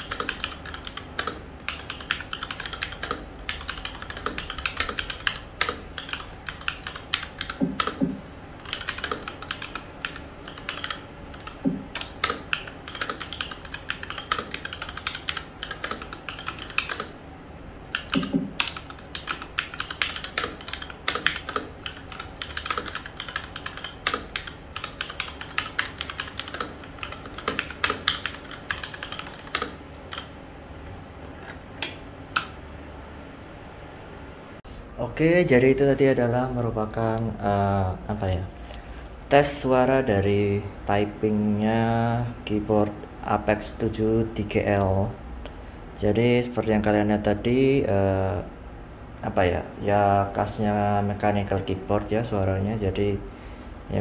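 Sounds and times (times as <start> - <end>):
mechanical keyboard typing: 0.0 - 17.2, 17.8 - 30.3.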